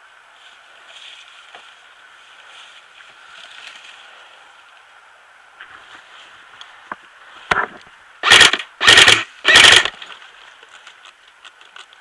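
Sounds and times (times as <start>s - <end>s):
airsoft gun firing bursts: 8.2s - 10.0s.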